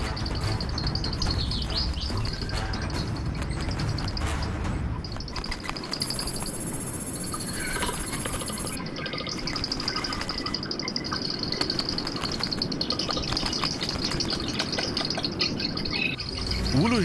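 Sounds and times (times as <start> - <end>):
insect trilling: 5.1 - 17.0
higher insect trill: 5.2 - 15.4.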